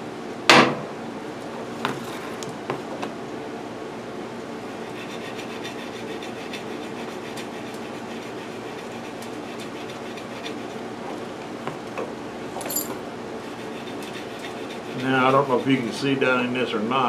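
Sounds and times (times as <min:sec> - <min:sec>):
steady background hum: 0:00.0 - 0:17.0
pad scrubbing inside brush holder: 0:04.8 - 0:11.9, 0:13.4 - 0:16.1.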